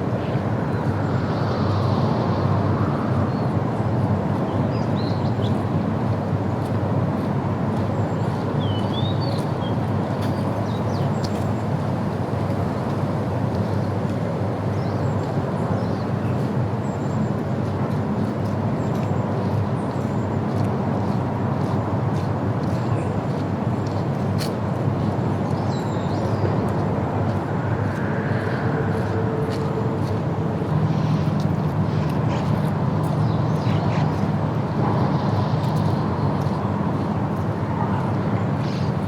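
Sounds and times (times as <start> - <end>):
low rumble: 26.6 - 32.2.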